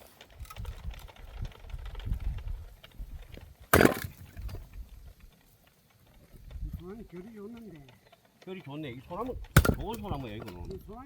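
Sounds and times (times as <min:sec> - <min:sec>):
wood splitting crack: 0:02.8 - 0:04.8, 0:09.3 - 0:10.8.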